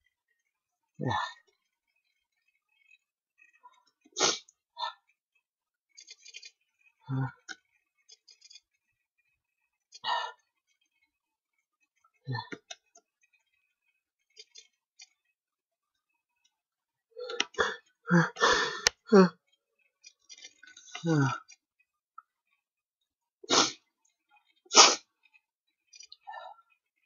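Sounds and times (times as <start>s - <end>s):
sneeze burst: 4.2s - 4.4s, 23.5s - 23.8s, 24.7s - 25.0s
man catching breath: 17.6s - 19.2s.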